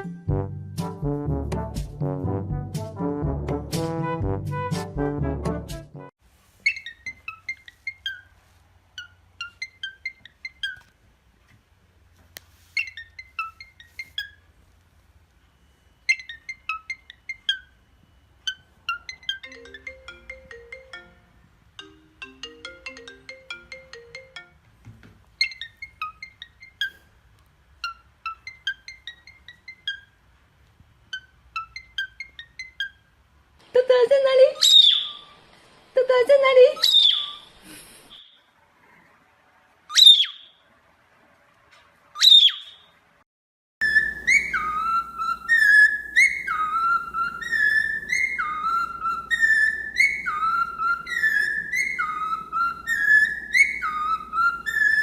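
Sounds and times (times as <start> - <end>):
electronic ringtone melody: 18.4 - 24.6.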